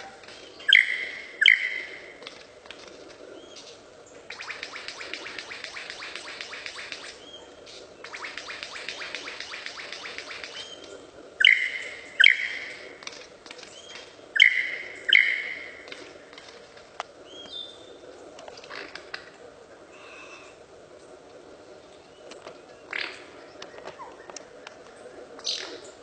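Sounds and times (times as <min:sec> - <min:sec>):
bird calling: 0:00.0 - 0:19.3.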